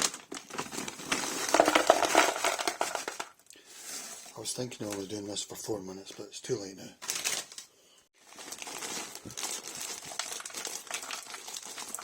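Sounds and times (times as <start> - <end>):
plastic packaging crinkling: 0.0 - 5.2, 7.0 - 12.0.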